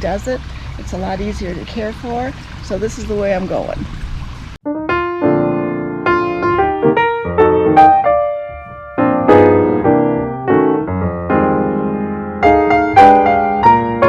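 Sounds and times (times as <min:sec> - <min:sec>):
piano playing chords: 0:04.6 - 0:14.0.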